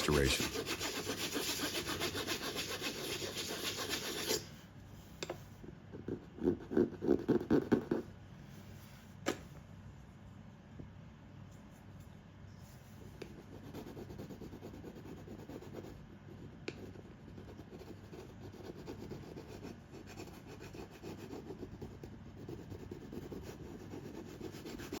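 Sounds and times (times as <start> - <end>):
scratchy rubbing on hard surface: 0.0 - 4.5.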